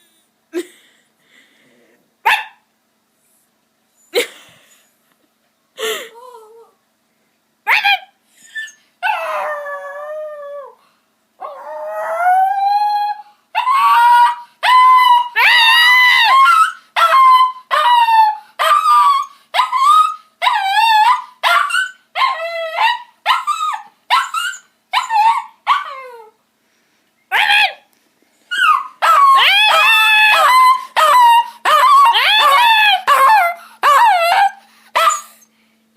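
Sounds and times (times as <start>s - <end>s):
dog howling: 28.6s - 35.2s.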